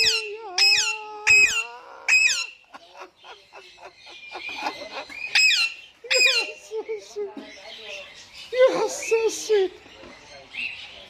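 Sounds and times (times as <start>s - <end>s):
parrot squawking: 0.0s - 2.6s, 5.1s - 6.6s.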